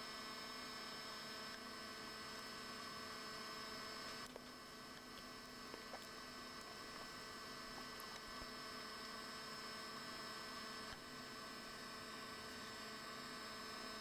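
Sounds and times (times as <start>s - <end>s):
faint electrical hum: 0.0s - 14.0s
faint small ticks: 4.1s - 8.6s.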